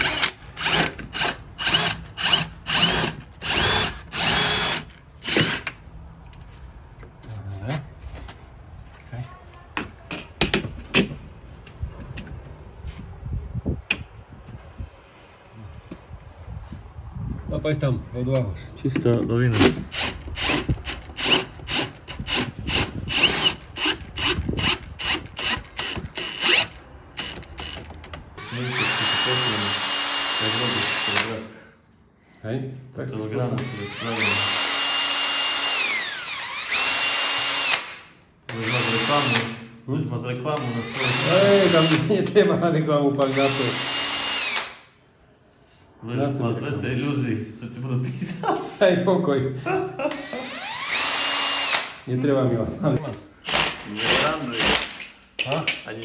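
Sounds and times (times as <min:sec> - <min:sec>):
cordless hammer drill motor: 0:00.0 - 0:05.7, 0:19.9 - 0:31.5, 0:33.6 - 0:39.6, 0:40.6 - 0:42.1, 0:43.2 - 0:44.8, 0:50.1 - 0:52.0, 0:53.4 - 0:55.0.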